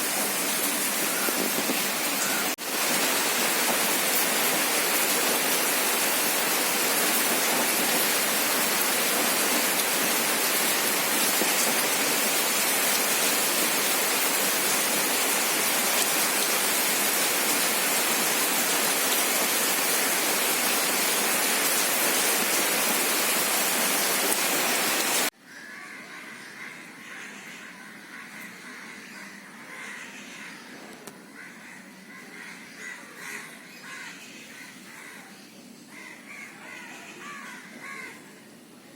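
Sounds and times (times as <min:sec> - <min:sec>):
heavy rain falling: 0:00.0 - 0:25.3.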